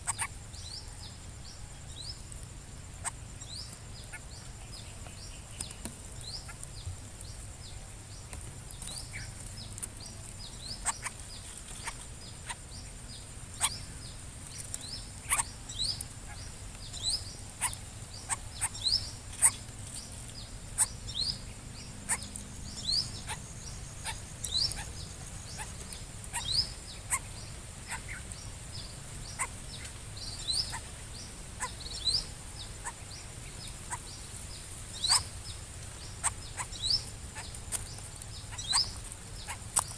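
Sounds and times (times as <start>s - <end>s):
birds chirping: 0.0s - 39.9s
steady high hiss: 0.0s - 39.9s.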